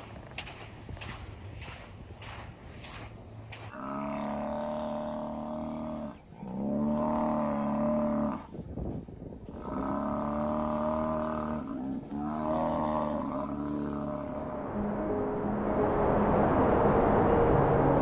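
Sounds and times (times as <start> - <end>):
buffalo bellowing: 3.7 - 8.5, 9.6 - 14.8.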